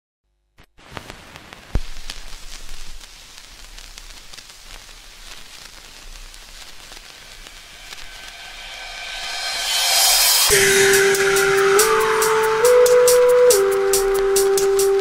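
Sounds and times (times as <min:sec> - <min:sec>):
crackling rain-like noise: 0:00.6 - 0:15.0
hiss: 0:00.8 - 0:15.0.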